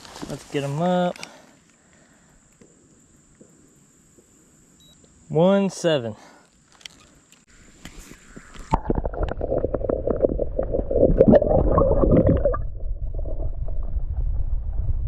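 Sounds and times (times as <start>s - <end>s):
muffled water gurgling and sloshing: 7.6s - 15.0s
bubbles crackling: 8.2s - 14.8s.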